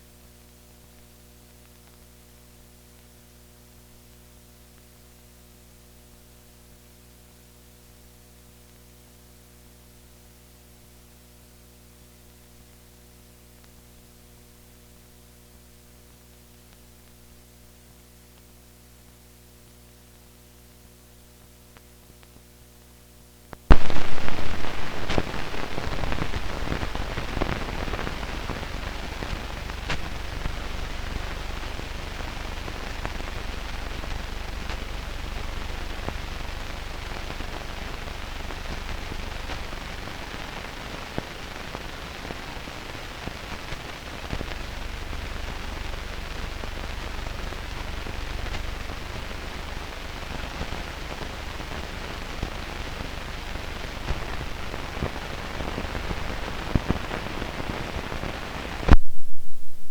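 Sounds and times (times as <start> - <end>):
film soundtrack hum and hiss: 0.0 - 59.9
loud crackling noise: 23.5 - 59.9.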